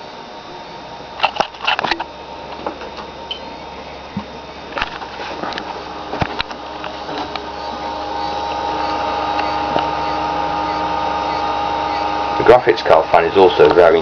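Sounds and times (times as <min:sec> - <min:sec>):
computer fans whirring: 0:00.0 - 0:14.0
hard drive clicking: 0:04.2 - 0:12.2.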